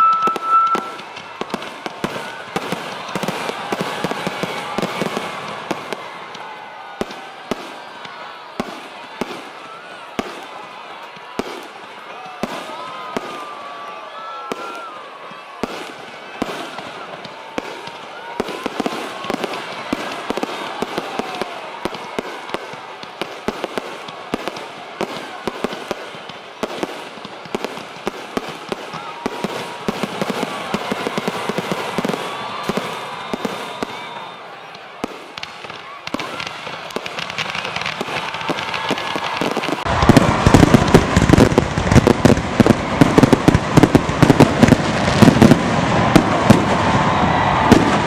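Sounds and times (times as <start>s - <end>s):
crowd voices: 0.0s - 48.0s
fireworks cracking and popping: 0.0s - 48.0s.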